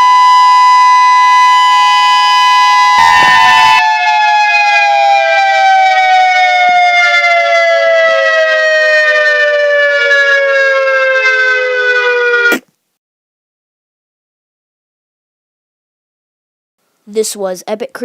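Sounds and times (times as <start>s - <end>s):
warning siren winding down: 0.0s - 12.6s
short burst of noise: 3.0s - 3.8s.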